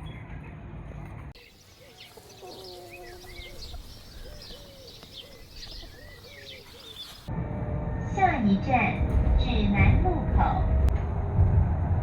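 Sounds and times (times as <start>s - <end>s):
birds calling low notes: 1.4s - 7.3s
high bird chirps: 1.4s - 7.3s.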